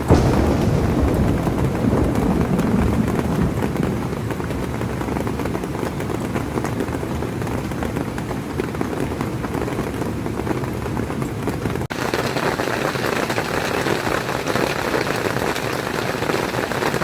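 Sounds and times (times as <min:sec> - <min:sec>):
low rumble of thunder: 0:00.0 - 0:06.8
heavy rain pouring: 0:00.0 - 0:17.0.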